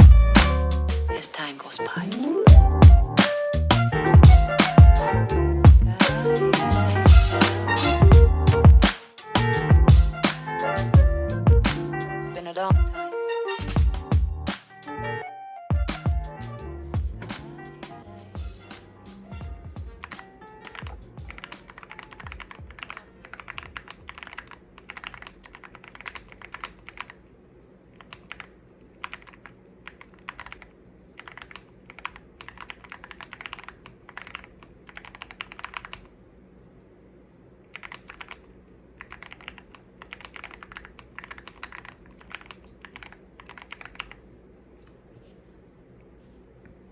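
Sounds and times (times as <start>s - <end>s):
mechanical keyboard typing: 20.0s - 27.2s, 28.0s - 36.1s, 37.7s - 44.2s.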